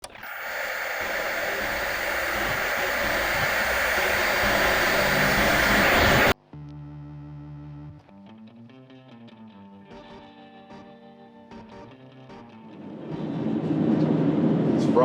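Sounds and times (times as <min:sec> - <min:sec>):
rushing noise: 0:00.0 - 0:06.4.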